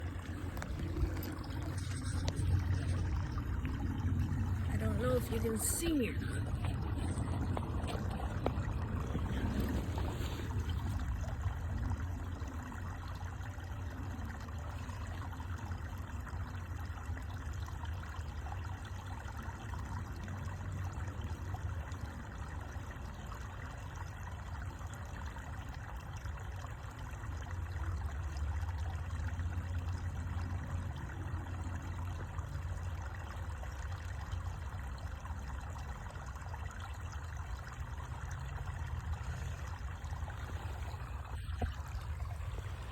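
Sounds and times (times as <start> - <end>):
low rumble: 0.0 - 5.4
water trickling: 0.0 - 42.9.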